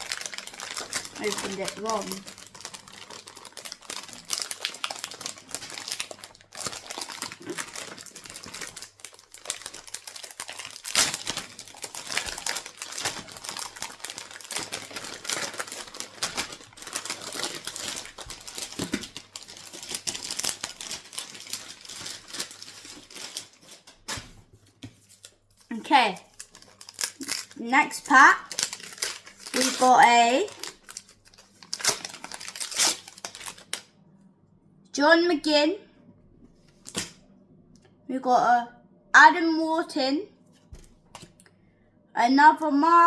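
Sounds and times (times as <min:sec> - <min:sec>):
foil wrapper crinkling and tearing: 0:00.0 - 0:24.2, 0:25.1 - 0:33.9, 0:36.8 - 0:37.2.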